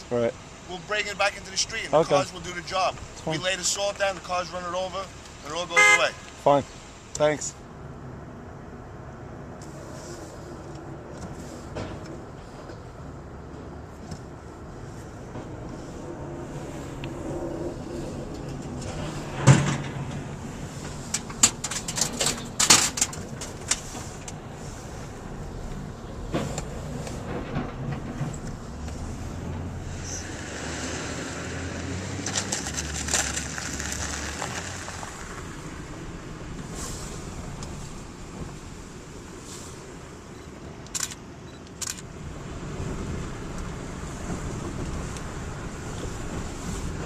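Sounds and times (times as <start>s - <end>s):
vehicle engines running: 0.0s - 47.0s
sharp knocks and clanks: 18.5s - 24.1s, 26.3s - 28.9s.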